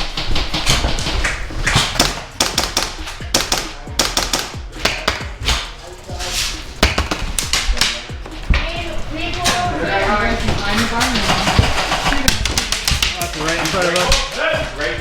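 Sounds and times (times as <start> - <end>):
airsoft guns firing: 0.0 - 5.6.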